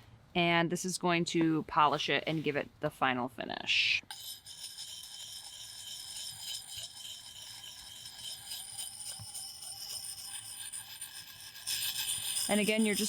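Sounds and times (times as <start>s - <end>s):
stone scraping axe blade: 4.1s - 13.0s.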